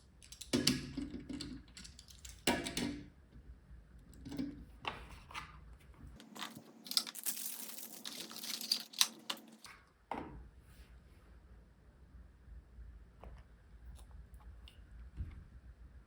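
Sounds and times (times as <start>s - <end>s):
packaging rustling and crinkling: 6.2s - 9.7s.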